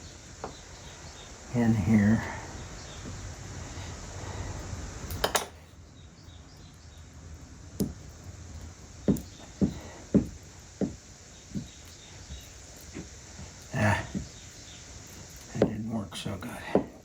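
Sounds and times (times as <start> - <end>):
dull knocks on wood: 7.8 - 8.0, 9.0 - 11.8, 16.6 - 17.0.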